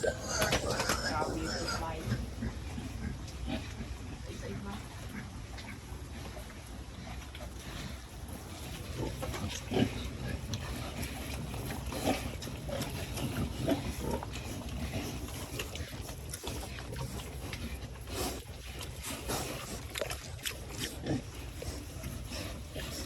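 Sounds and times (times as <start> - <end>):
piglets grunting: 0.0 - 5.9.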